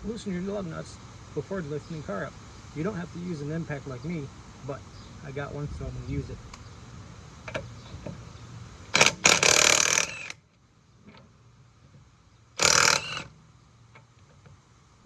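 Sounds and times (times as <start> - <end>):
impact wrench hammering: 9.0 - 10.2, 12.6 - 13.2.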